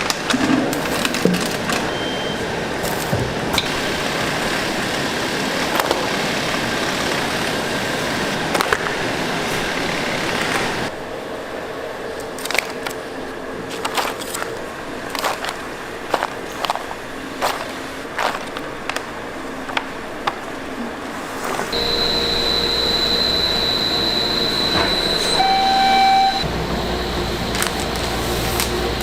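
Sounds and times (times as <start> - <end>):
steady rushing kitchen noise: 0.0 - 29.0.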